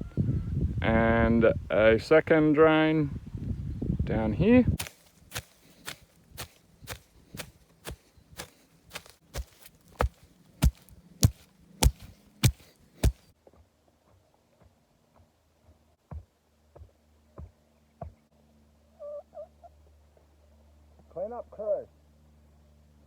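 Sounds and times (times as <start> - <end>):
footsteps on hard ground: 4.8 - 13.3.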